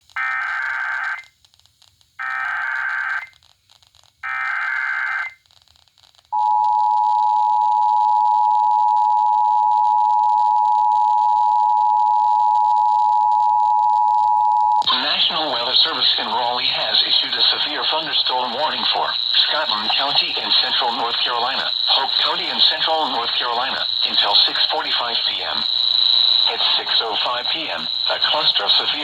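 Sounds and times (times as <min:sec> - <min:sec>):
digital header data bursts: 0:14.8 - 0:29.0.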